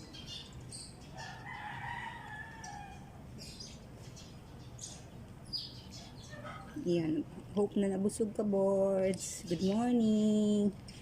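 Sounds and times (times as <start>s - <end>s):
small birds chirping: 0.0s - 11.0s
rooster crowing: 1.2s - 3.2s.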